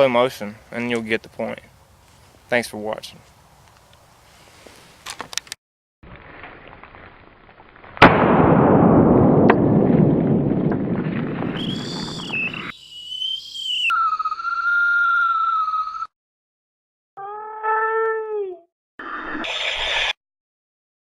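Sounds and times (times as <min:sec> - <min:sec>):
loud blast with rumbling decay: 0:07.6 - 0:12.7.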